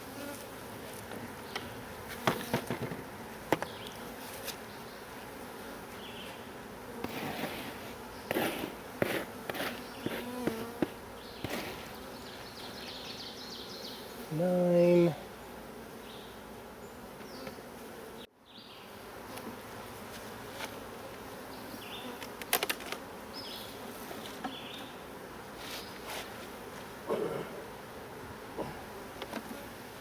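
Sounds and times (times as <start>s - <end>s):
honeybees buzzing: 0.0s - 30.0s
wooden hive frames clicking: 22.2s - 23.1s.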